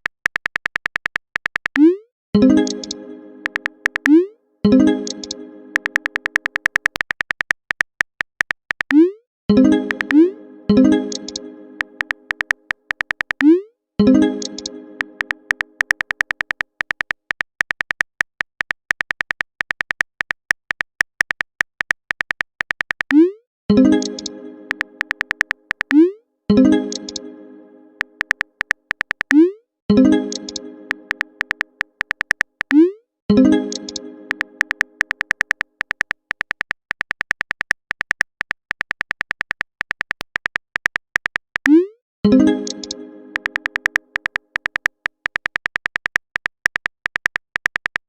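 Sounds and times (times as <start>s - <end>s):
phone keyboard typing taps: 0.0s - 2.0s, 2.6s - 4.2s, 5.0s - 9.0s, 9.8s - 10.2s, 11.1s - 13.5s, 14.4s - 23.2s, 23.9s - 26.0s, 28.0s - 29.4s, 30.3s - 32.8s, 33.7s - 41.8s, 42.6s - 48.0s
message chime: 2.4s - 6.2s, 9.5s - 12.3s, 14.0s - 15.7s, 23.7s - 25.2s, 29.9s - 31.4s, 42.3s - 43.8s
chiming tone: 9.5s - 12.3s, 14.0s - 15.5s, 42.3s - 43.6s.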